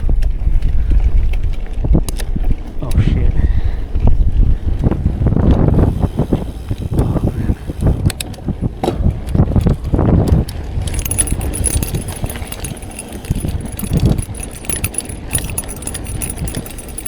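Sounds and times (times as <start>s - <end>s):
bike rattling over rough trail: 10.8s - 17.0s
high metallic jingle: 10.9s - 17.0s.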